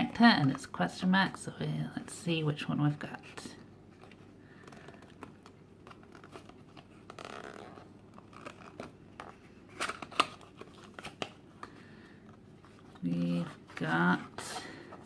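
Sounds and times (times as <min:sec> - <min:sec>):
packaging rustling and tearing: 0:04.0 - 0:11.8.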